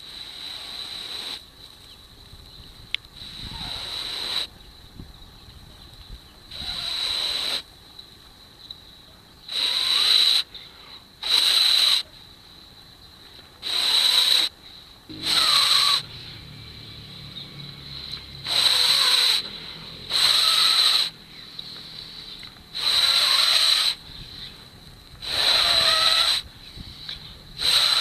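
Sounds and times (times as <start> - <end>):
person blowing on tinder: 21.9 - 24.0, 25.2 - 26.4, 27.6 - 28.0.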